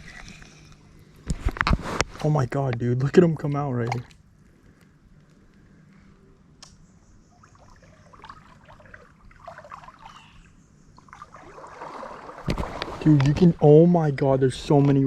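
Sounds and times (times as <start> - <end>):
river water trickling: 7.2 - 15.0
small splashes: 7.4 - 10.4, 11.0 - 13.7.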